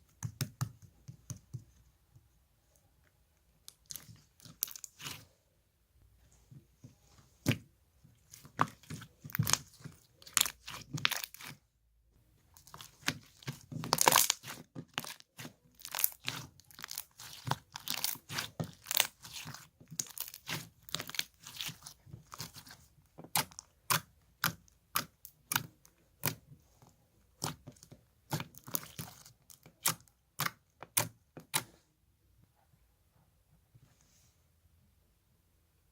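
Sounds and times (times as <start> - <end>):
slime crackling and popping: 8.3 - 11.6, 12.6 - 26.4, 27.4 - 31.7.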